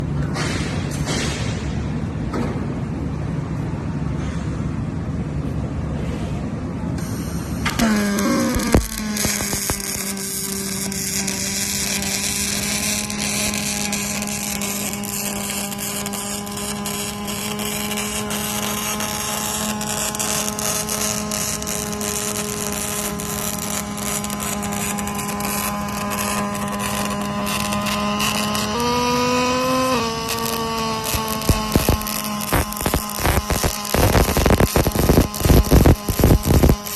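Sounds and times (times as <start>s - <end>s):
electrical hum: 6.5s - 36.9s
welding crackle: 7.0s - 36.9s.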